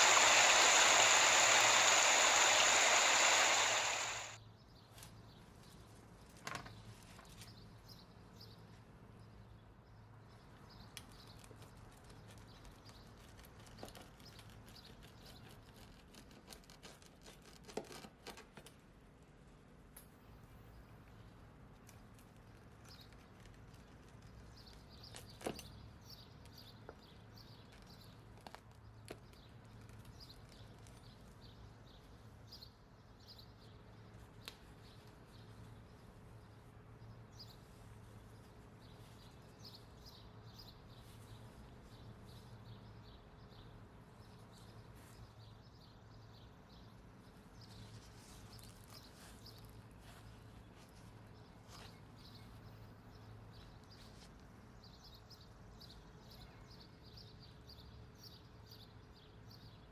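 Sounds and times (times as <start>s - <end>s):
faint high chirps: 0.0s - 4.4s
low hum: 0.0s - 4.4s.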